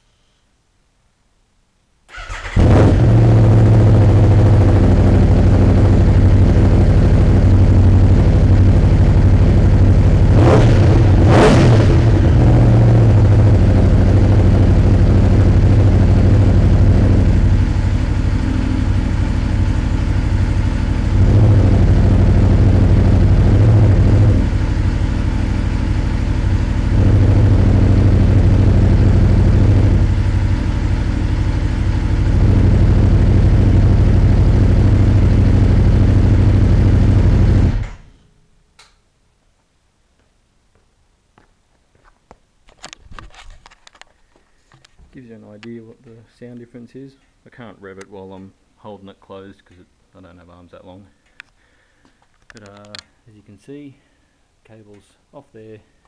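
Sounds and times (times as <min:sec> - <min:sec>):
engine throttle blips: 0:02.1 - 0:38.1
motorcycle engine idling: 0:02.2 - 0:37.8.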